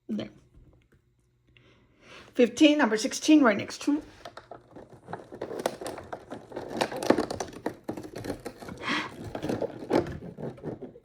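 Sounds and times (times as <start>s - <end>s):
clicks taps and crackles of handling: 4.2s - 11.0s.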